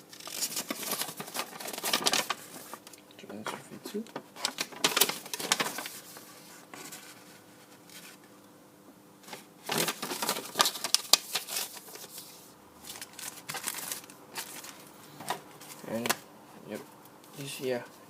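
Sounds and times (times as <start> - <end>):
paper leaflets crinkling: 0.0 - 2.9, 4.1 - 8.2, 9.2 - 16.2.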